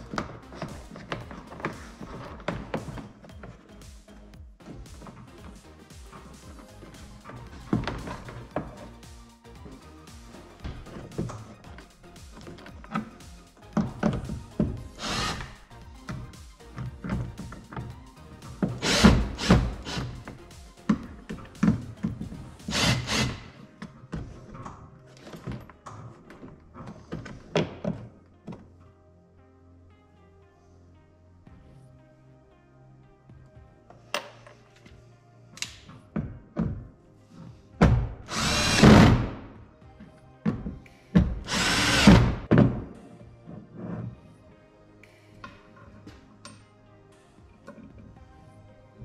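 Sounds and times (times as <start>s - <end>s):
faint background music: 0.0s - 49.0s
power drill running: 15.0s - 15.6s, 18.8s - 20.2s, 38.3s - 39.2s, 41.5s - 42.4s.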